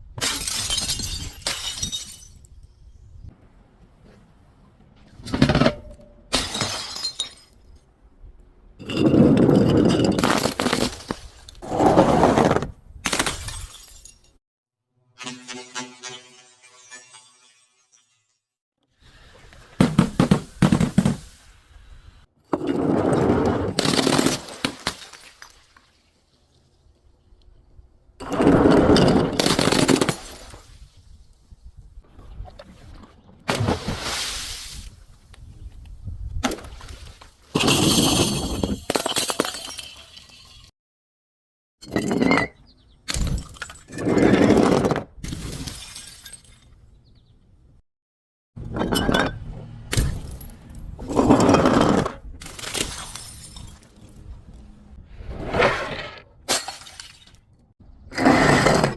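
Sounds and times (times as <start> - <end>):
glass bottle being crushed: 0.2 - 2.5, 8.8 - 11.3, 13.1 - 14.3, 37.6 - 40.7, 51.1 - 54.2
glass bottles smashing: 0.2 - 2.6, 6.3 - 7.8, 13.1 - 14.4, 15.3 - 18.4, 37.5 - 40.7, 45.4 - 46.7, 48.8 - 51.5, 52.4 - 54.2, 56.5 - 57.4.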